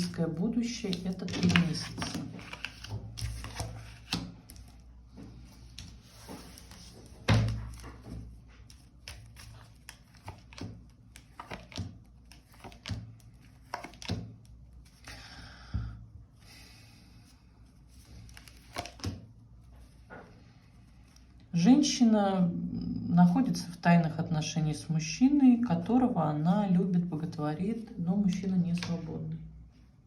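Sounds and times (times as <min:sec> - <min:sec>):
cards tapping and rustling: 0:00.7 - 0:15.2, 0:18.1 - 0:20.4.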